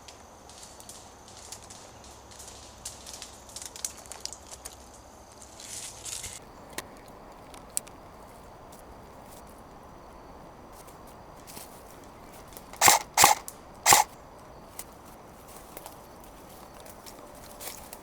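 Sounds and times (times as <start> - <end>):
faint clicks: 6.4 - 9.8
airsoft gun shots: 12.7 - 14.2.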